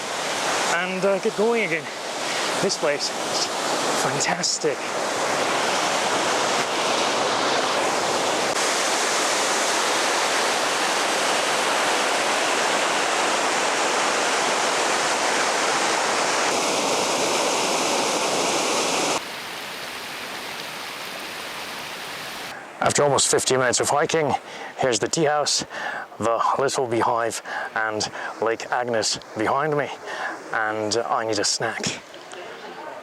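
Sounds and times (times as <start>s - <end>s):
waterfall rushing: 0.0s - 22.5s.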